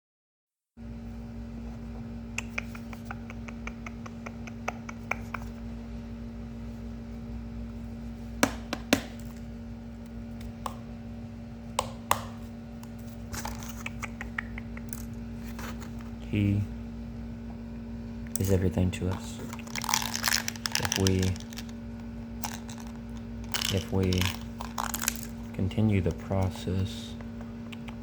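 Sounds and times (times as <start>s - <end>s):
steady low hum: 0.8s - 28.0s
fingers tapping plastic container: 8.4s - 9.3s.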